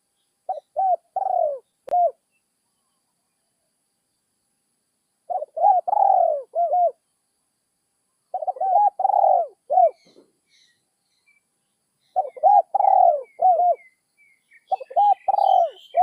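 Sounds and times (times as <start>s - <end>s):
dove cooing: 0.5s - 2.2s, 5.3s - 7.0s, 8.3s - 10.3s, 12.2s - 13.9s, 14.6s - 16.0s.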